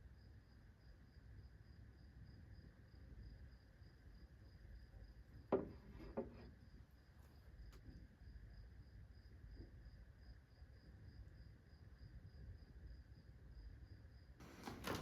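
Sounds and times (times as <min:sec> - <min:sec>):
knocks of objects being handled: 0:05.5 - 0:06.5.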